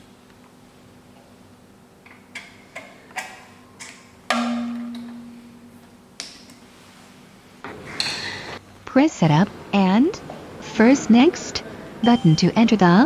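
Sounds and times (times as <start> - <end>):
metal knock with low ring: 4.3 - 6.0.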